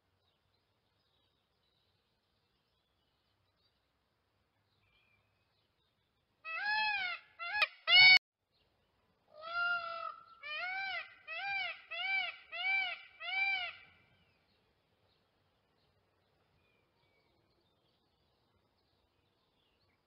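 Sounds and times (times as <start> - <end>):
peafowl calling: 6.5 - 8.2, 9.4 - 13.9.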